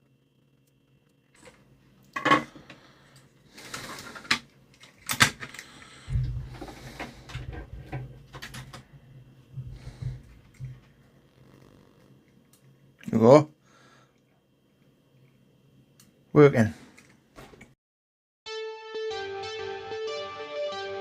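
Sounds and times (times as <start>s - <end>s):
low steady hum: 0.0s - 17.2s
clicks of small parts and tools: 3.2s - 5.8s, 16.9s - 17.2s.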